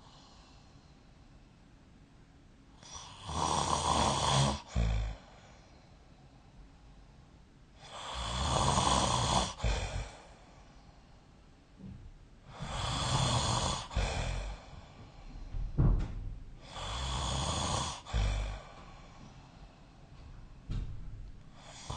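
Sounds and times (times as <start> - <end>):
person snoring: 2.8 - 5.3, 7.8 - 10.3, 12.5 - 14.7, 16.6 - 19.1, 21.6 - 21.9.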